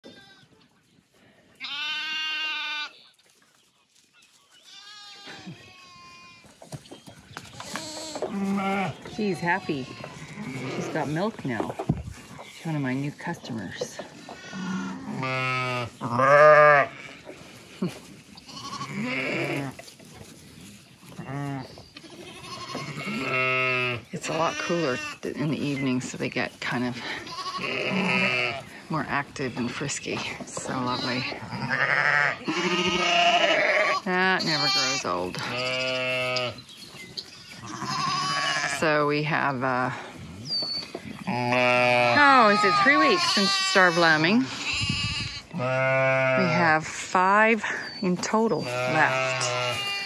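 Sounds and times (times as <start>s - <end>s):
lamb bleating: 1.6s - 2.9s, 4.7s - 6.4s, 7.7s - 11.2s, 14.4s - 17.2s, 18.4s - 19.8s, 21.3s - 25.2s, 27.0s - 28.6s, 30.8s - 36.6s, 37.6s - 38.8s, 41.3s - 46.8s, 48.6s - 50.0s.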